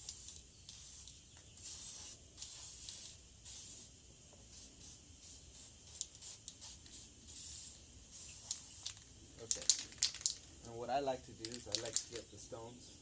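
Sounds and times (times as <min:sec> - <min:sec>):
aerosol can spray bursts: 0:00.0 - 0:09.0.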